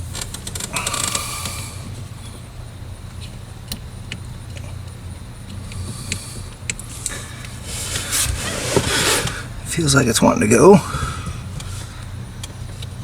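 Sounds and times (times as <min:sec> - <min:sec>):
low steady hum: 0:00.0 - 0:13.0
hinge pin scraping: 0:06.7 - 0:09.5.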